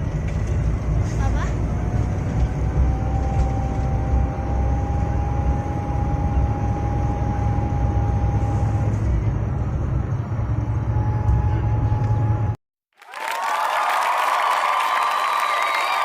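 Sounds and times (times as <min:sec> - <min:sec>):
vehicle engine rumble: 0:00.0 - 0:12.6.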